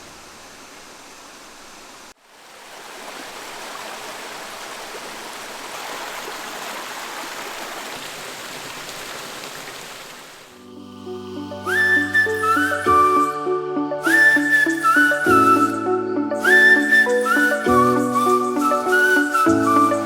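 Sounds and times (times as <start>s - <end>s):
rushing brook water: 0.0s - 10.6s, 16.4s - 20.0s.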